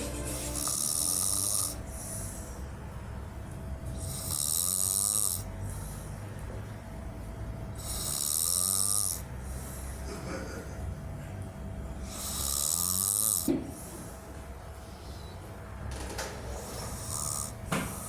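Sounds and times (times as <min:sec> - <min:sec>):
person snoring: 0:00.2 - 0:02.3, 0:04.0 - 0:05.5, 0:07.8 - 0:09.3, 0:12.0 - 0:13.5, 0:16.8 - 0:17.6.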